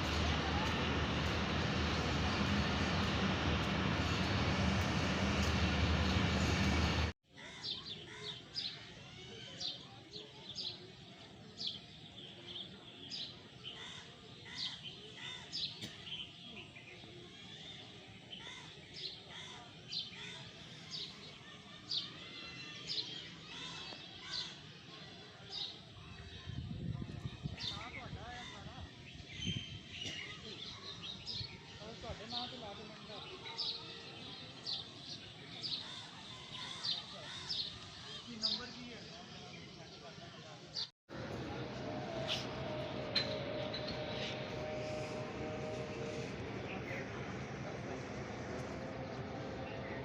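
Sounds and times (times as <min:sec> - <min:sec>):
loud train noise: 0:00.0 - 0:07.1, 0:41.1 - 0:50.0.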